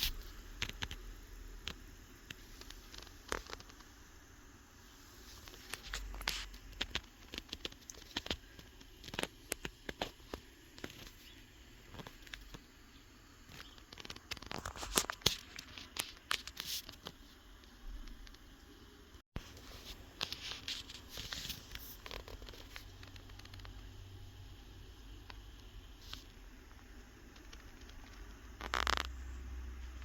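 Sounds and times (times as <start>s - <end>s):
paper rustling and crinkling: 13.6s - 17.2s, 19.4s - 23.7s.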